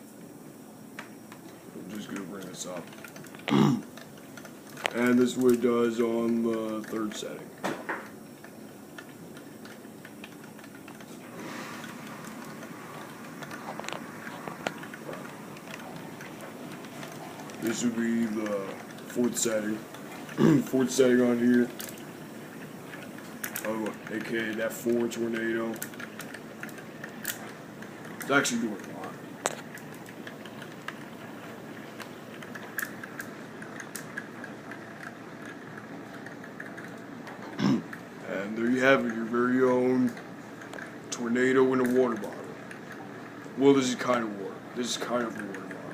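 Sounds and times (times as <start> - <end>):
device whirring: 0.9 - 45.9
small clicks and crackles: 0.9 - 45.9
water spinning: 8.2 - 37.2.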